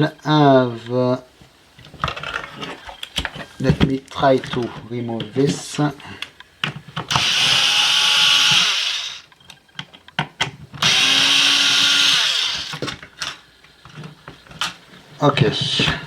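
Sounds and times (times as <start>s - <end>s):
electric screwdriver running: 7.1s - 9.3s, 10.8s - 12.9s.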